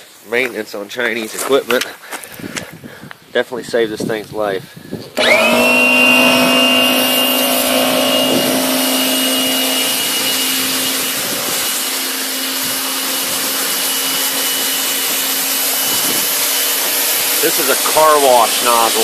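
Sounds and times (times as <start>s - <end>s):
pressure washer pump whine: 5.2s - 19.0s
spray hiss: 8.3s - 19.0s.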